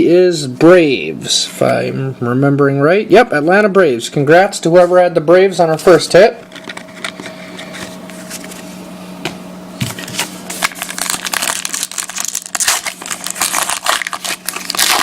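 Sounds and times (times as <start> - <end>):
faint electrical hum: 0.0 - 15.0
wrapper crinkling and tearing: 10.0 - 15.0.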